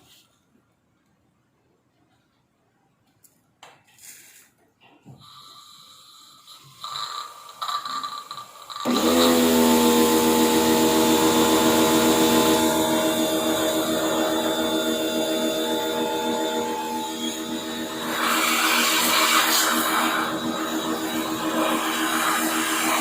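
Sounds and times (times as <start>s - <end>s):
washing machine motor whine: 8.9s - 23.0s.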